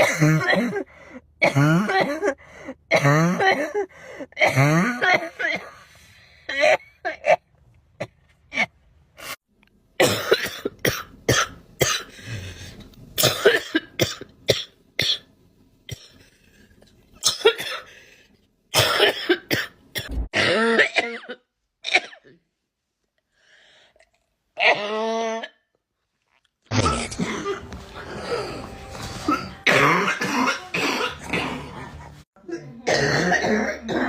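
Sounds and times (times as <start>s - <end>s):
girl coughing: 0.0s - 5.8s, 10.0s - 12.1s, 13.2s - 15.3s, 17.2s - 17.9s, 18.8s - 22.4s, 26.7s - 27.7s, 29.2s - 31.7s, 32.7s - 34.0s.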